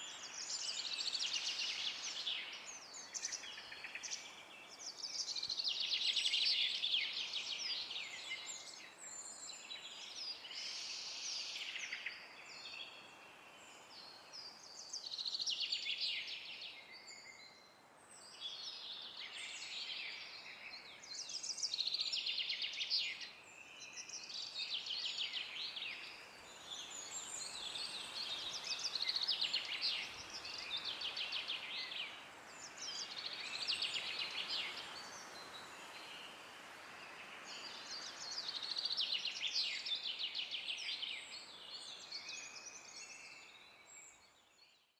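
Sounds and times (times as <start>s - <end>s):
faint steady hiss: 0.0s - 44.6s
songbirds singing and chirping: 0.0s - 44.9s.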